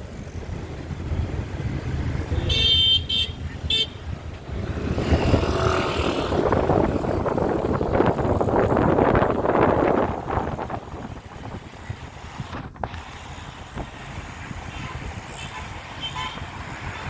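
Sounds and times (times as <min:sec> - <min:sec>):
street traffic: 0:00.0 - 0:17.0
vehicle horn toots: 0:02.4 - 0:04.0, 0:14.7 - 0:16.5
wind rumbling on microphone: 0:03.4 - 0:17.0
loud rushing noise: 0:04.0 - 0:11.4.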